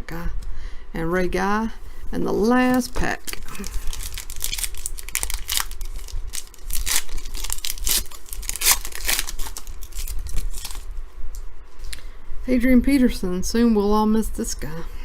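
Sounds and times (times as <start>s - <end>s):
wrapper tearing and crinkling: 3.2s - 10.9s.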